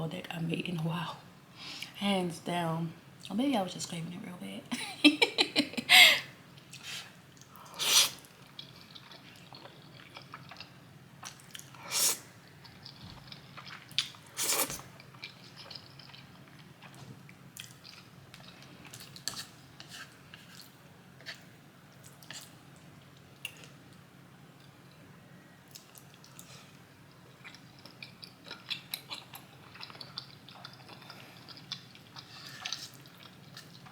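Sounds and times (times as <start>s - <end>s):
person chewing noodles: 6.6s - 22.5s, 25.6s - 33.9s.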